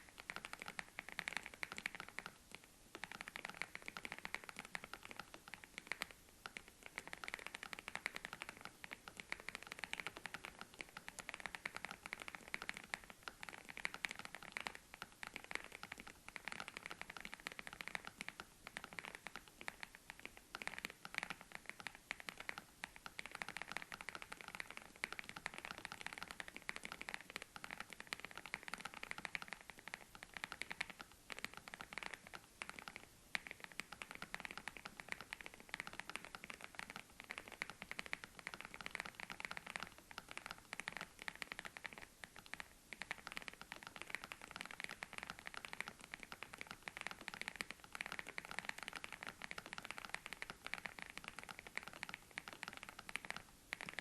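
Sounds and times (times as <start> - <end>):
mechanical keyboard typing: 0.0 - 54.0.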